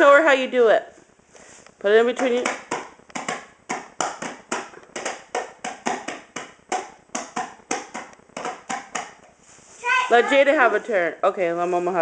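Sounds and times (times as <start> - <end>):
child beating a hand drum: 2.1 - 9.4.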